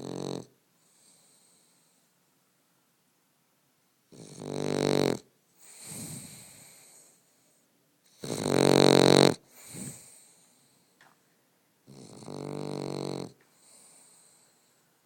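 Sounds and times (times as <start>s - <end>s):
dog snoring: 0.0s - 1.9s, 4.1s - 7.2s, 8.1s - 10.8s, 11.8s - 14.4s.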